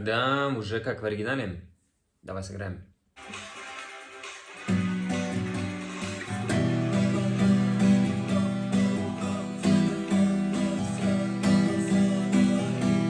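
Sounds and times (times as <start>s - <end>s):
guitar strumming chords: 4.6s - 13.0s.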